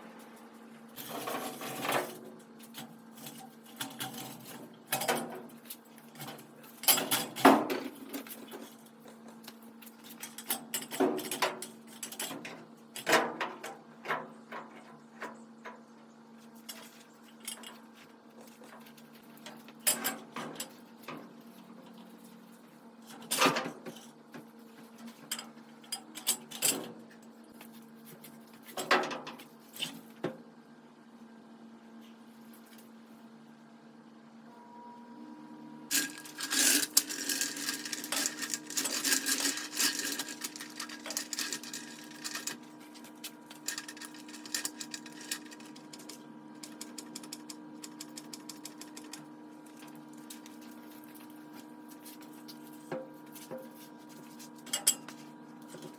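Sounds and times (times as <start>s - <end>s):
steady low hum: 0.0s - 55.9s
metal tools clanking: 35.9s - 49.2s.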